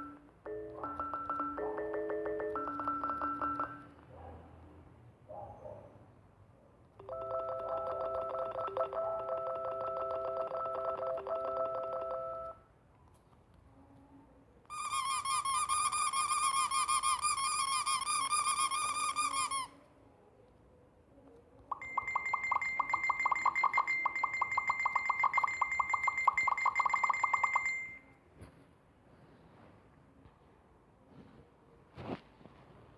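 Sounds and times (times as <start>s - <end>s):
rapidly repeating electronic tones: 21.7s - 27.8s.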